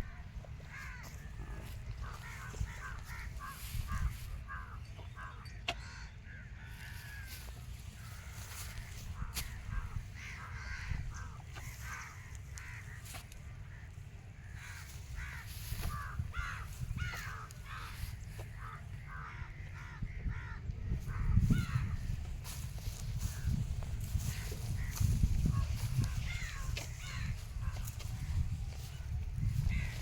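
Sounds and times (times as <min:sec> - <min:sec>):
birds cawing: 0:00.0 - 0:30.0.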